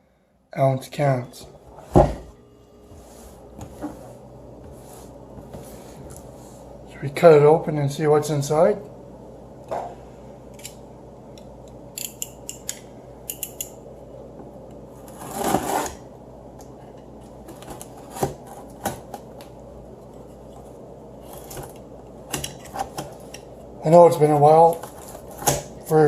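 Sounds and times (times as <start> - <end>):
cardboard box being cut open: 15.1 - 16.0
cardboard scrape: 15.1 - 16.0.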